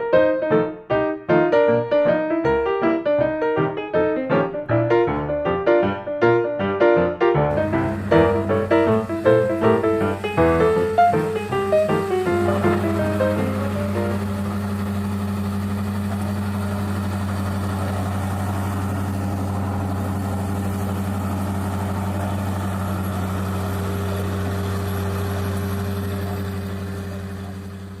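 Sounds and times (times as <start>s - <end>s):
engine idling: 7.5s - 28.0s.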